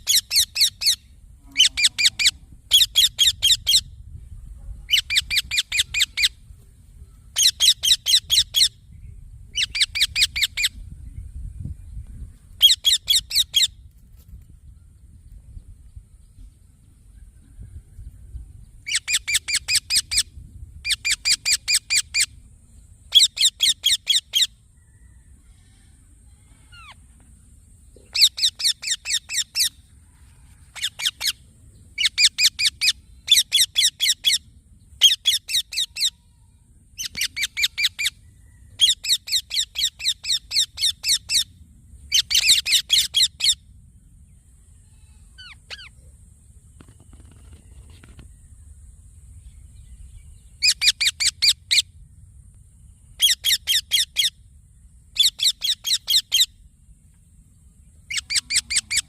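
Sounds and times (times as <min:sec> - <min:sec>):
parrot shrill chirps: 0:00.0 - 0:01.0, 0:04.9 - 0:06.4, 0:07.4 - 0:08.8, 0:12.6 - 0:13.7, 0:18.9 - 0:22.4, 0:23.1 - 0:24.6, 0:28.1 - 0:29.8, 0:30.7 - 0:31.4, 0:32.0 - 0:36.2, 0:37.0 - 0:38.2, 0:38.8 - 0:41.5, 0:42.1 - 0:43.6, 0:45.4 - 0:45.9, 0:50.6 - 0:51.9, 0:53.2 - 0:54.4, 0:55.2 - 0:56.5, 0:58.1 - 0:59.0.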